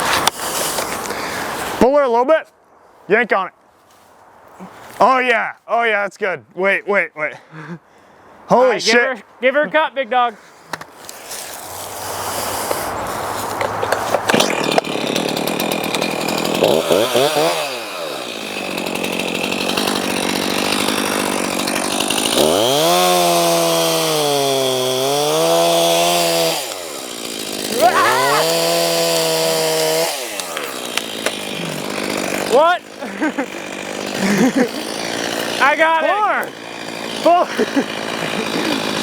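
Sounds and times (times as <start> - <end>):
chainsaw cutting into trunk: 10.7 - 39.0.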